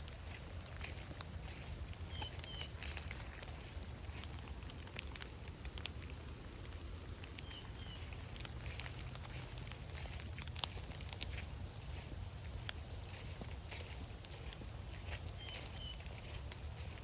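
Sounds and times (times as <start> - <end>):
footsteps on wet forest trail: 0.0 - 17.0
low steady rumble: 0.0 - 17.0
bird chirping: 1.4 - 3.0, 7.4 - 8.5, 14.4 - 16.9.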